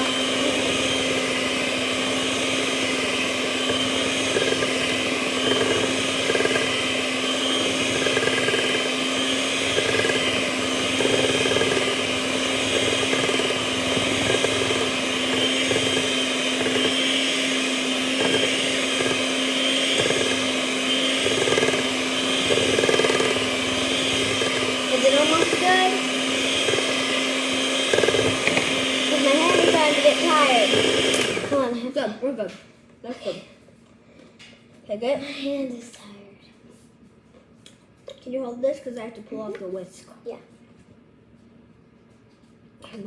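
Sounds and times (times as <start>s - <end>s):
electric hand mixer churning batter: 0.0s - 31.9s.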